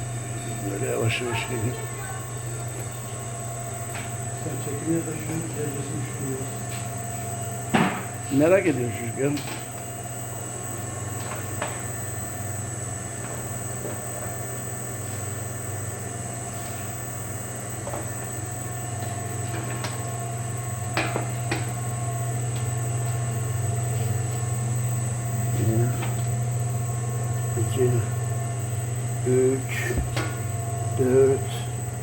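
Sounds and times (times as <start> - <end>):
oil press motor hum: 0.0 - 32.0
high whine: 23.3 - 32.0.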